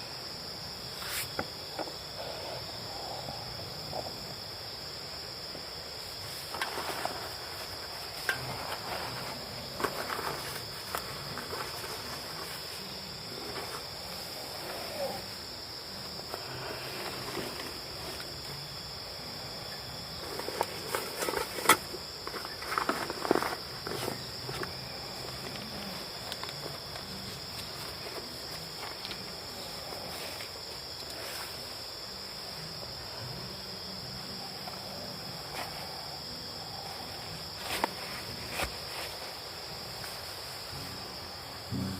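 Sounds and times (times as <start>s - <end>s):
high-pitched insect chorus: 0.0s - 41.9s.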